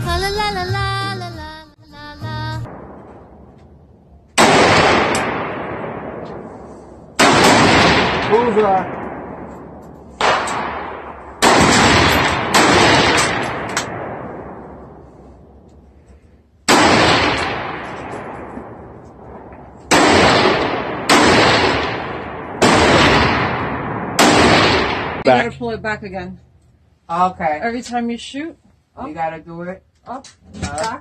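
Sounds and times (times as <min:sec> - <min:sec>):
rifle shots echoing: 0:02.7 - 0:15.6, 0:16.7 - 0:25.3.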